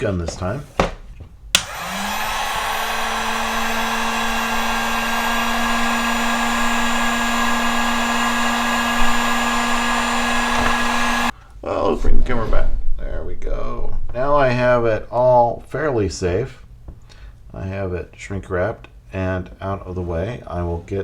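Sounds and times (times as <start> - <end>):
heat gun airy rush and hum: 1.6 - 11.4.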